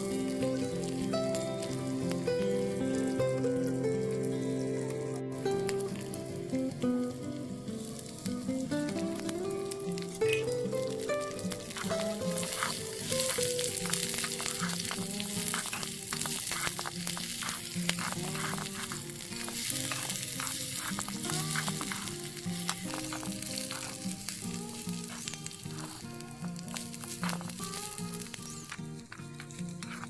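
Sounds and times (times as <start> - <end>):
background music with held notes: 0.0 - 30.0
food sizzling in oil: 0.0 - 30.0
small spoon stirring and clicking: 11.8 - 24.0, 29.4 - 30.0.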